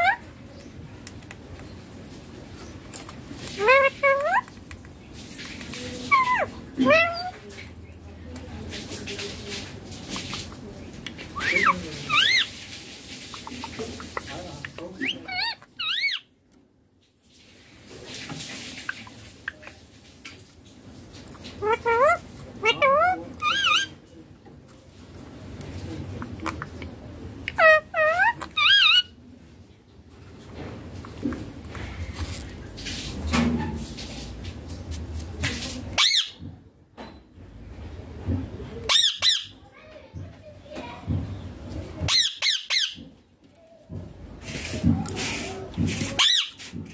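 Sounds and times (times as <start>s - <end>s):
parrot squawks: 0.0s - 0.3s, 3.6s - 4.5s, 6.1s - 7.4s, 11.4s - 12.5s, 15.0s - 16.3s, 21.6s - 23.9s, 27.5s - 29.2s, 36.0s - 36.4s, 38.9s - 39.6s, 42.1s - 43.0s, 46.2s - 46.6s.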